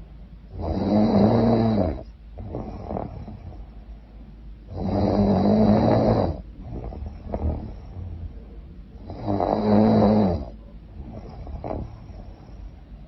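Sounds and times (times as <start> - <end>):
woman snoring: 0.5 - 3.5, 4.7 - 8.1, 9.0 - 12.4
soft breathy sound: 6.0 - 13.0.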